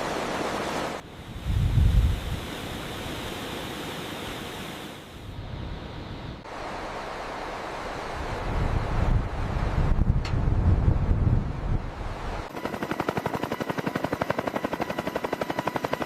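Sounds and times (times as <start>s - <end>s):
wind and sea rushing: 0.0s - 16.0s
wind buffeting microphone: 1.1s - 2.8s, 8.1s - 12.5s.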